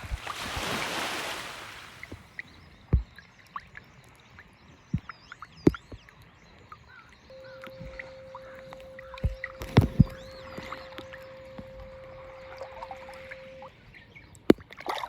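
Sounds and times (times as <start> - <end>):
faint high chirps: 4.9 - 14.4
steady pure tone: 7.3 - 14.0.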